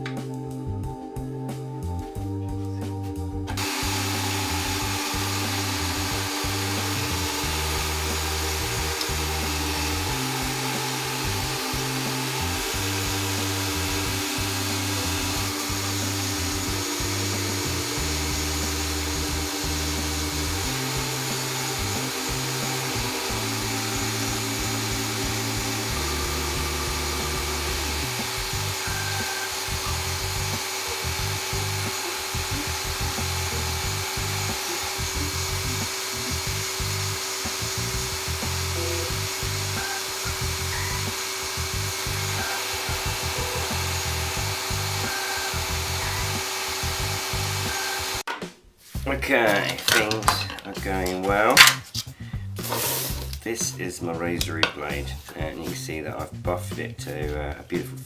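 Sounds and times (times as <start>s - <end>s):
background music: 0.0s - 58.0s
grinding steel razor blade: 3.6s - 48.2s.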